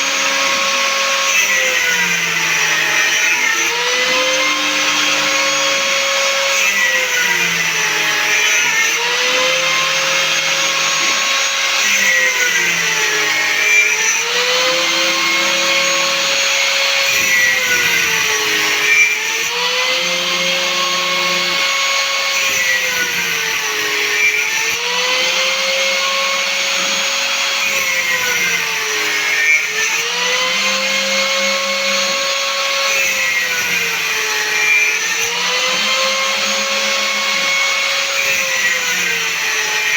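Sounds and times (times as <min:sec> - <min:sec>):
cnc router motor whine: 0:00.0 - 0:39.9.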